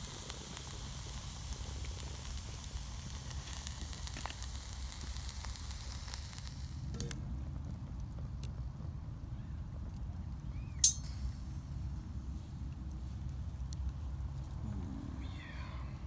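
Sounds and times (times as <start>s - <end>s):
vegetables sizzling in a pan: 0.0s - 6.9s
wood fire crackling: 0.0s - 14.7s.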